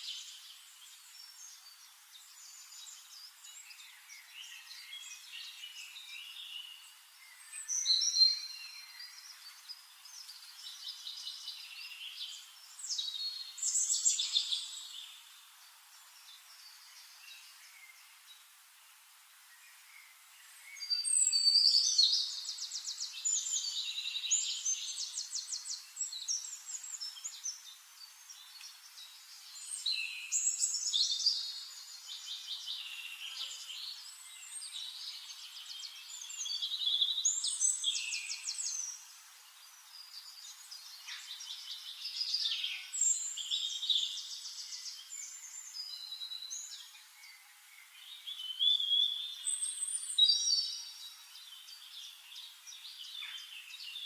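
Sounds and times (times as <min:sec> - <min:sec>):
faint steady hiss: 0:00.0 - 0:54.0
songbirds trilling and chirping: 0:00.0 - 0:54.0.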